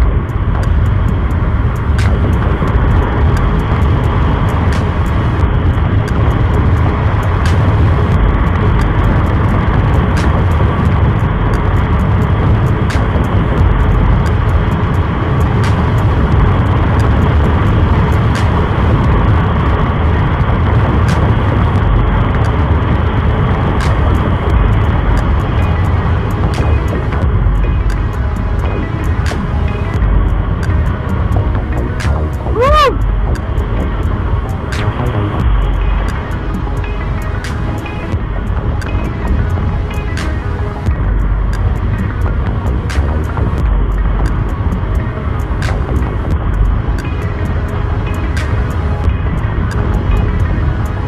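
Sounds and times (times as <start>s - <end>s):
wind noise on microphone: 0.0s - 51.0s.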